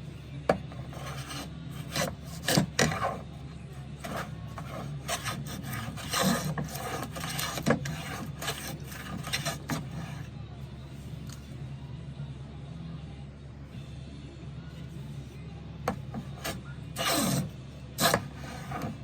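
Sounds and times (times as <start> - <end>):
hand plane scraping wood: 0.5 - 10.3, 15.9 - 19.0.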